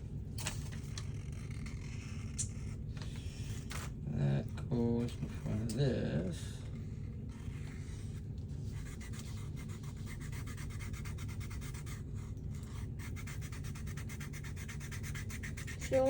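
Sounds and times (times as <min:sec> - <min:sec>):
drawing tool scratching cardboard: 0:00.7 - 0:02.8, 0:06.8 - 0:16.0.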